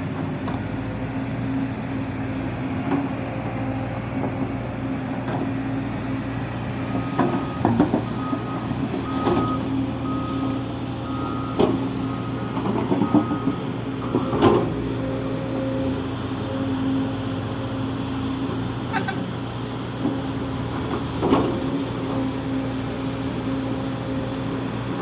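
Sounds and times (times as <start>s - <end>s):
diesel engine running: 0.0s - 25.0s
reversing alarm beeping: 6.9s - 17.1s.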